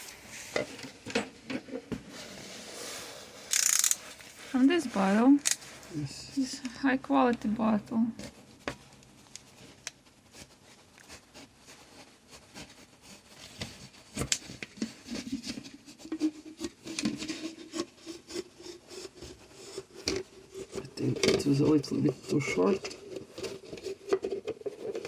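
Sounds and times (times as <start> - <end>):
scraping plastic: 10.4 - 25.0.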